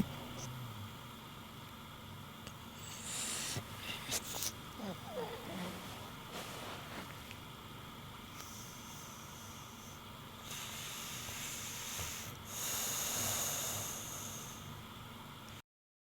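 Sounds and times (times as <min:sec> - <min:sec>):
dog snoring with wheezy whistle: 0:02.8 - 0:06.9, 0:08.4 - 0:14.7.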